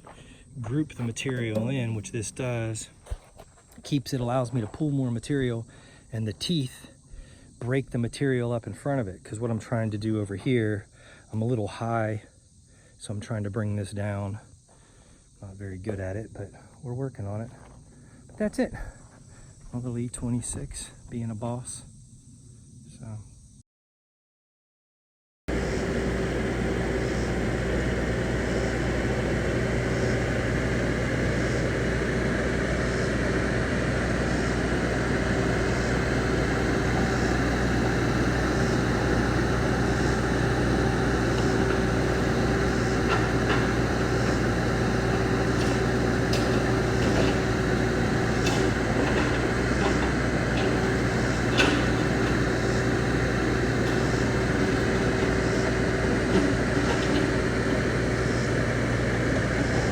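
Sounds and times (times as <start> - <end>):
excavator diesel engine running: 0.0 - 5.4, 25.5 - 59.9.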